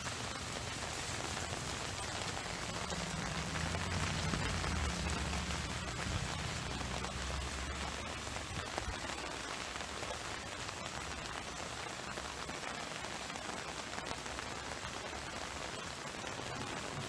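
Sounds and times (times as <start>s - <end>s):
heavy rain falling: 0.0s - 17.0s
low rumble: 1.3s - 8.6s.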